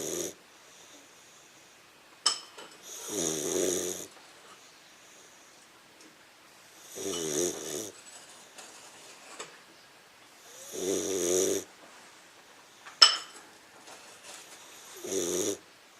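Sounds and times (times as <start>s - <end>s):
puppy snoring: 0.0s - 1.6s, 2.8s - 4.2s, 6.8s - 8.0s, 10.4s - 11.7s, 14.6s - 15.6s.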